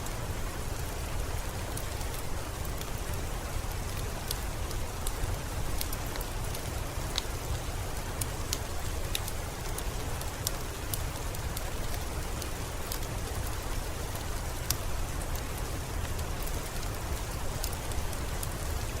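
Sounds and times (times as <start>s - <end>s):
steady rain: 0.0s - 19.0s
wood fire crackling: 0.6s - 19.0s.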